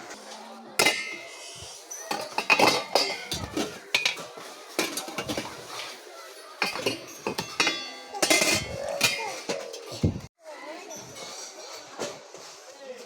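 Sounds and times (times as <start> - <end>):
metal cookware clattering: 0.7 - 10.3.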